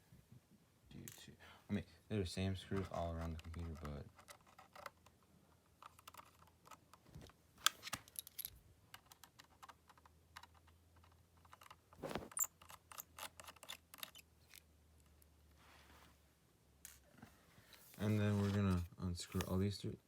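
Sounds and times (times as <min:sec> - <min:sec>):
handling noise: 0:11.5 - 0:14.1
screwdriver clicking on screws: 0:11.5 - 0:14.6.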